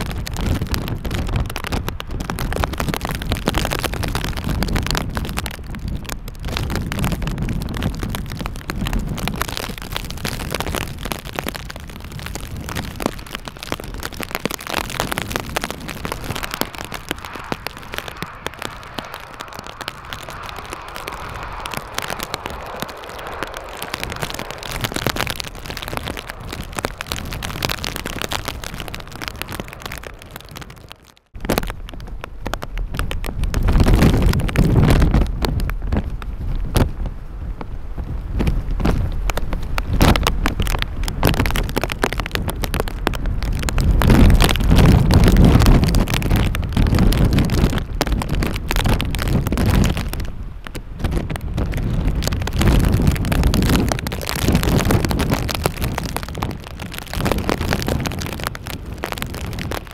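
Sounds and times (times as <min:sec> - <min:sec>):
gusty wind on microphone: 0:00.0 - 0:59.9
rain: 0:00.0 - 0:59.9
jet airliner engine: 0:15.1 - 0:29.8.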